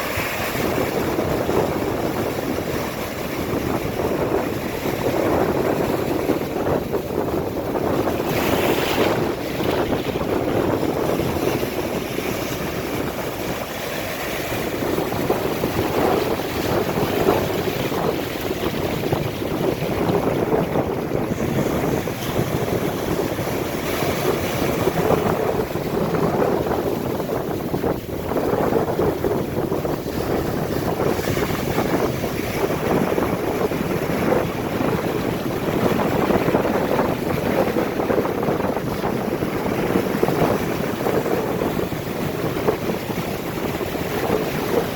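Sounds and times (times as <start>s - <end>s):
ocean surf breaking: 0.0s - 44.9s
wind buffeting microphone: 0.0s - 44.9s.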